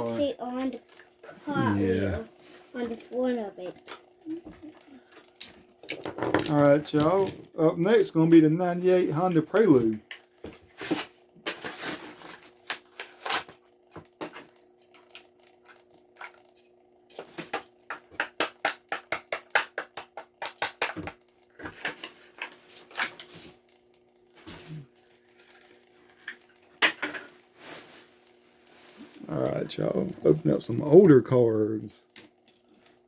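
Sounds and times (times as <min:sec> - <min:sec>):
plastic packaging crackling and tearing: 0:11.0 - 0:13.6.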